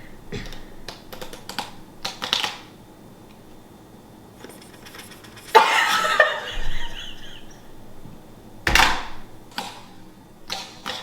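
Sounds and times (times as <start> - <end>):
playing cards shuffling: 4.4 - 6.2
playing cards riffling: 4.4 - 7.5.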